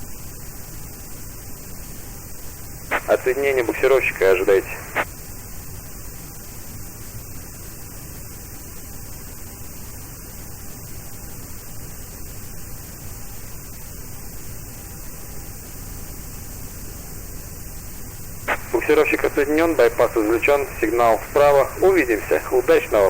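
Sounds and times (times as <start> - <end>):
static hiss: 0.0 - 23.0
low hum: 18.5 - 23.0.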